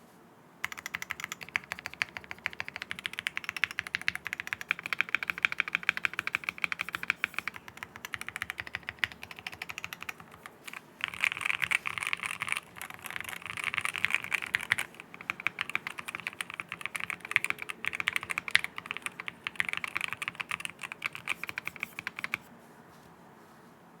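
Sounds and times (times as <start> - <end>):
muted mechanical keyboard typing: 0.6 - 22.5.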